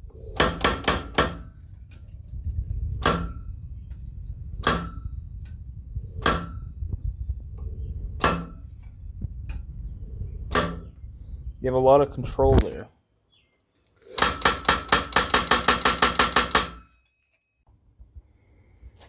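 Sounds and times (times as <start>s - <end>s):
low steady rumble: 0.0s - 12.9s
power hammer striking metal: 0.2s - 1.5s, 3.0s - 3.5s, 4.6s - 5.1s, 6.2s - 6.6s, 8.2s - 8.7s, 14.1s - 17.0s.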